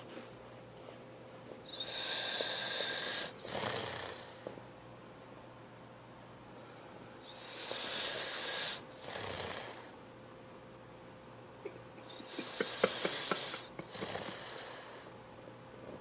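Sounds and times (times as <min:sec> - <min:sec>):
person snoring: 0:01.7 - 0:04.4, 0:07.4 - 0:09.9, 0:12.1 - 0:15.1.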